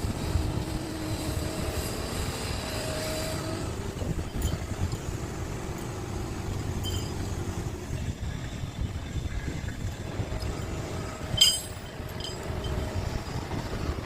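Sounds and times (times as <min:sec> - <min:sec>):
excavator diesel rumble: 0:00.0 - 0:14.0
brief metallic clinks: 0:11.3 - 0:12.8.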